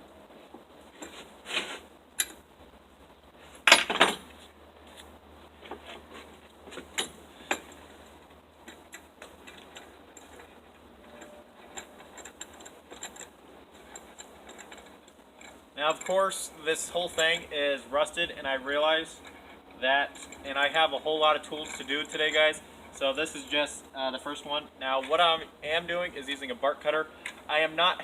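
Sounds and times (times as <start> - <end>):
metal tool clinking and clattering: 2.2 - 2.4, 3.6 - 4.3, 6.7 - 7.8, 8.6 - 16.3, 16.9 - 17.5, 19.2 - 20.6, 21.3 - 23.1.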